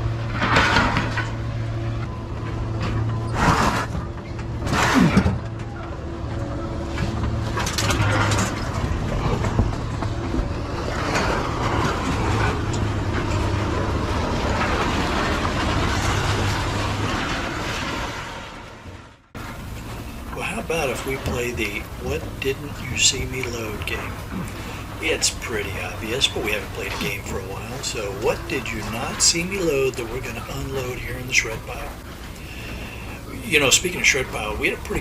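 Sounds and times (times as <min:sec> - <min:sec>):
scrap metal crashing: 0:00.0 - 0:01.6, 0:07.4 - 0:22.1
heavy diesel machinery running: 0:00.0 - 0:35.0.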